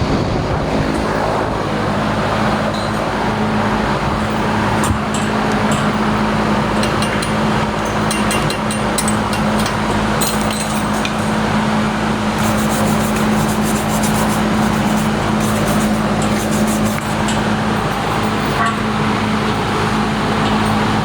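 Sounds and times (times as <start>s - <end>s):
machine humming: 0.0s - 21.0s
welding arc crackling: 10.9s - 17.7s.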